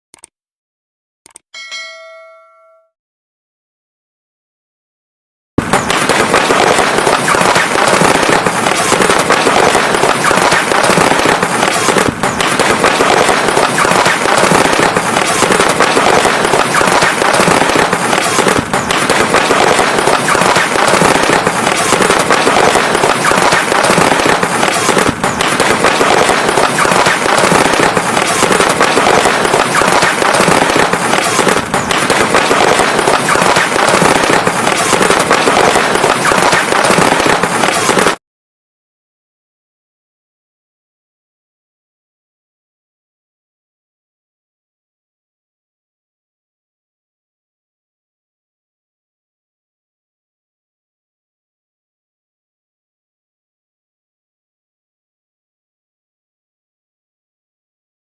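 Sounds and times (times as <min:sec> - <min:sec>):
fireworks crackling: 0:05.6 - 0:38.2.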